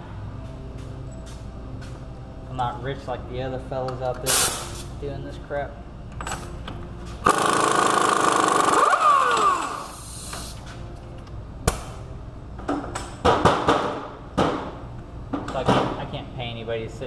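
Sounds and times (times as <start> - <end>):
impact wrench running: 7.2 - 10.1.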